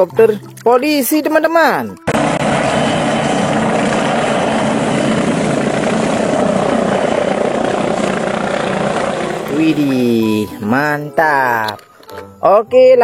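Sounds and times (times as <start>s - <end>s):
helicopter rotor and engine: 1.5s - 12.1s.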